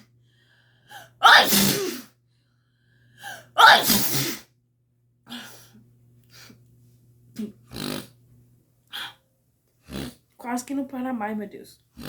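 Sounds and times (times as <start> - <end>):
woman sneezing and breathing: 0.9 - 2.2, 3.2 - 4.5.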